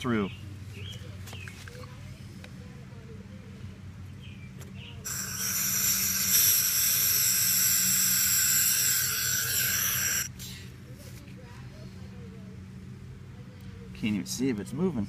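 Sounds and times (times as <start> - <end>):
aerosol can hissing: 5.0 - 10.3.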